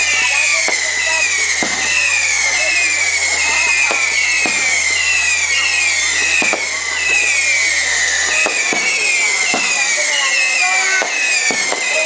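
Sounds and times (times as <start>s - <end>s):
firework bangs: 0.0s - 12.0s
whistling fireworks: 0.0s - 12.0s.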